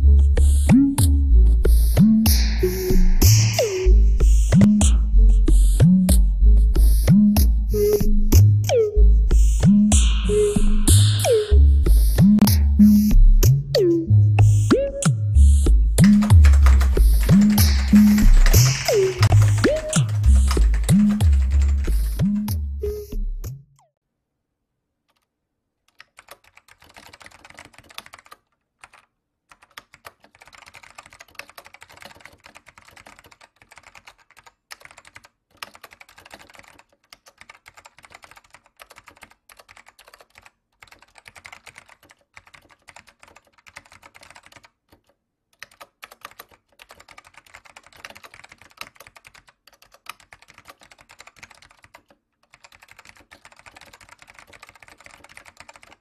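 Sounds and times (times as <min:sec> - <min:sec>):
fast typing on keyboard: 0:16.0 - 0:23.1, 0:25.9 - 0:56.0.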